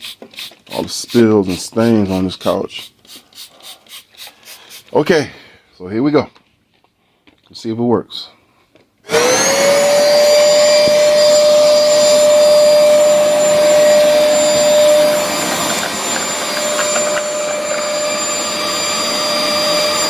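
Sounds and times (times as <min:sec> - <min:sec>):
carpet washer motor whining: 0:09.1 - 0:20.0.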